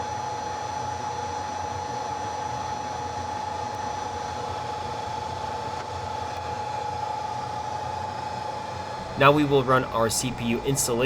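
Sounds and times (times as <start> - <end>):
fan whirring hum: 3.0 - 11.0.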